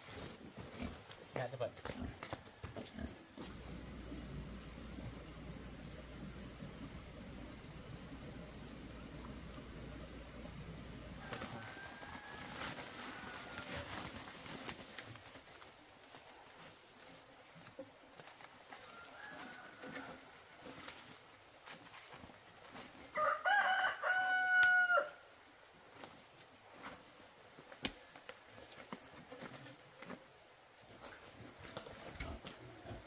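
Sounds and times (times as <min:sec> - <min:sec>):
rooster crowing: 0:11.2 - 0:13.9, 0:18.8 - 0:20.4, 0:23.1 - 0:25.2.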